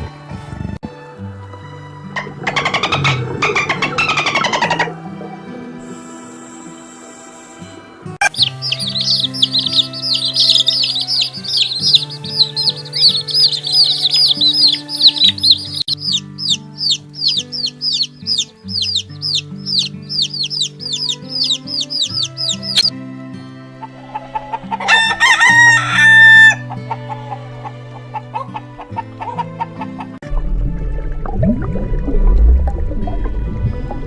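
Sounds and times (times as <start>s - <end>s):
background music with low notes: 0.0s - 34.0s
birds chirping: 8.2s - 22.9s.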